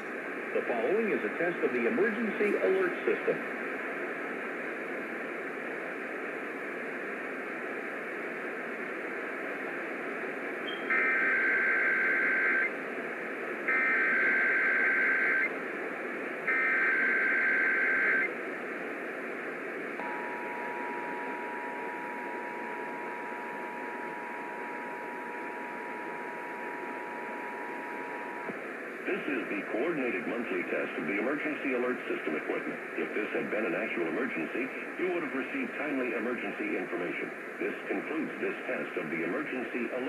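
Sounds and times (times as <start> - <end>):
radio hiss: 0.0 - 40.0
two-tone attention signal: 20.0 - 28.3.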